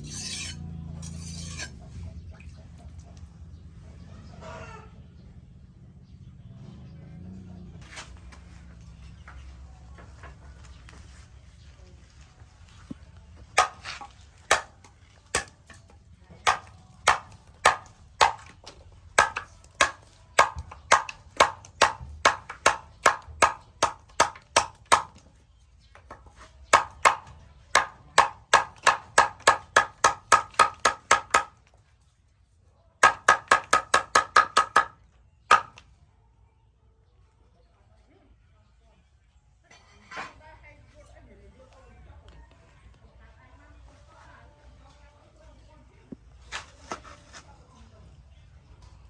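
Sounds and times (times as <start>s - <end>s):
knife blade chopping: 0.0s - 1.8s, 13.6s - 14.7s, 15.4s - 15.8s, 16.4s - 18.6s, 19.2s - 25.2s, 26.8s - 31.5s, 33.0s - 34.9s.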